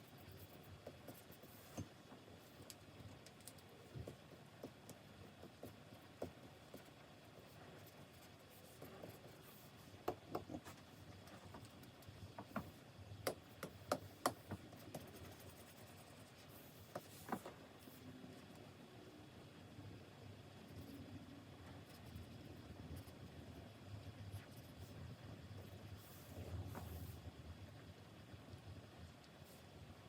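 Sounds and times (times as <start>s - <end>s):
stylus strokes on screen: 13.9s - 18.1s.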